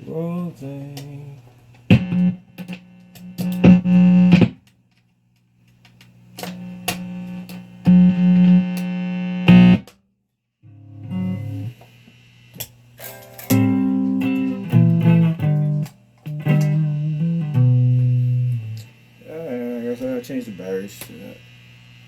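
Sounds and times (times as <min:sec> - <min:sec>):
fuzz electric guitar bursts: 0:10.7 - 0:11.8, 0:13.0 - 0:21.4.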